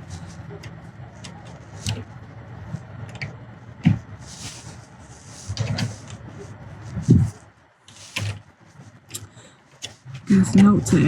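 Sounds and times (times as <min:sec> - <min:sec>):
hiss-like rustle: 0:04.2 - 0:06.1.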